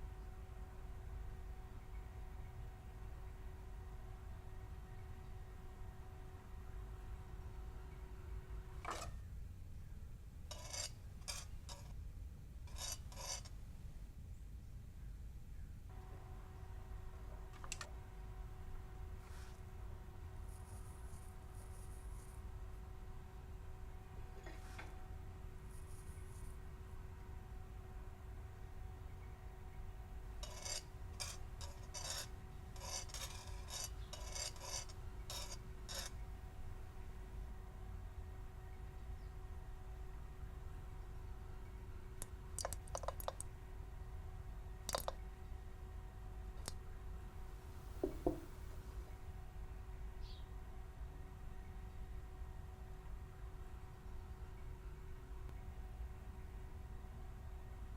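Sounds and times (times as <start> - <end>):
kitchen utensil scraping: 8.8 - 9.2, 10.5 - 11.9, 12.7 - 13.5, 30.4 - 36.2, 47.8 - 48.8.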